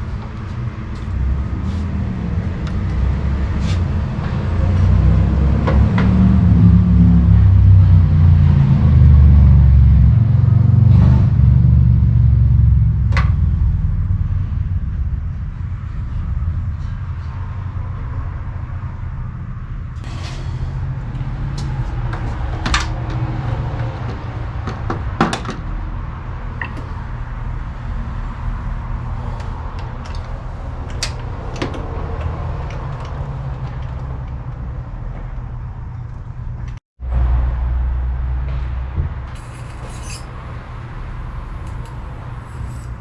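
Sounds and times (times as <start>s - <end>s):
low rumble: 0.0s - 24.6s.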